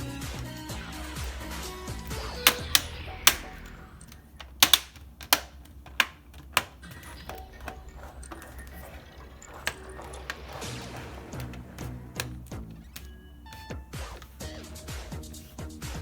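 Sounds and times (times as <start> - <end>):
background music: 0.0 - 4.9, 6.8 - 16.0
plastic clips snapping into place: 1.9 - 8.6, 9.6 - 14.4.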